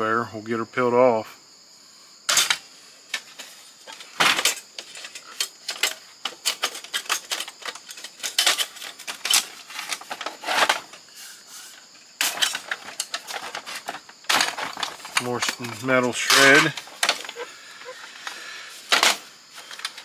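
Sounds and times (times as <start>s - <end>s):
small metal and plastic parts clattering: 2.3s - 20.0s.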